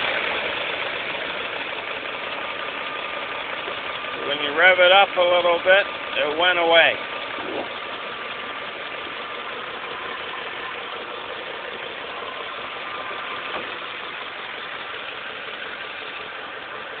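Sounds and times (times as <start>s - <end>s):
car engine idling: 0.0s - 17.0s
engine knocking: 0.0s - 17.0s.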